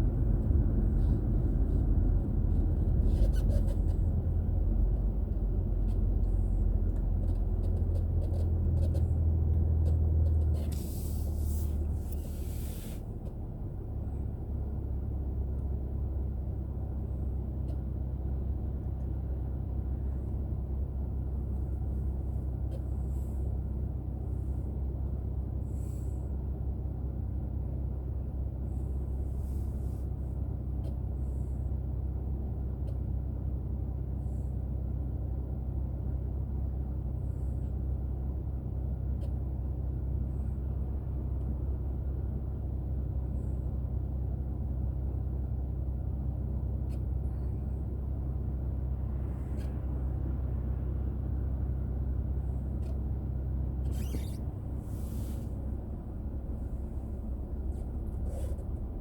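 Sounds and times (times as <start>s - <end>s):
car interior road rumble: 0.0s - 59.0s
short hisses: 10.8s - 13.1s, 53.9s - 55.6s.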